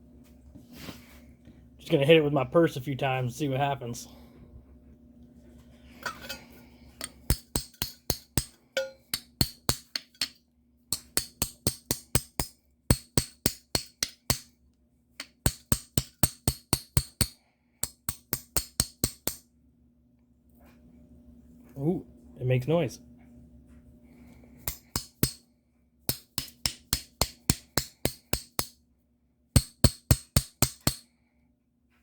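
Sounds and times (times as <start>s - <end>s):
hammer tapping metal pliers: 7.0s - 14.5s, 15.2s - 19.4s, 24.7s - 25.4s, 26.1s - 28.8s, 29.6s - 31.1s.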